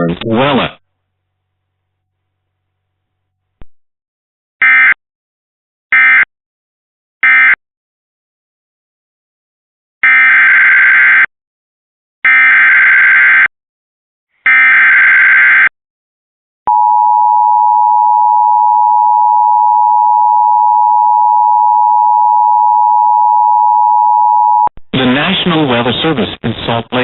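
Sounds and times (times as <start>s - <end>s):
loud steady attention tone: 16.7s - 24.7s.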